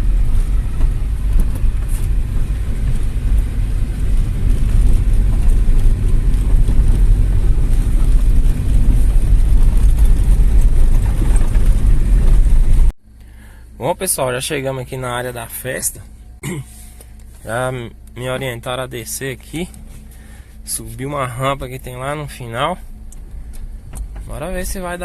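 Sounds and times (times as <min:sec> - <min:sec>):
car engine and road rumble: 0:00.0 - 0:25.0.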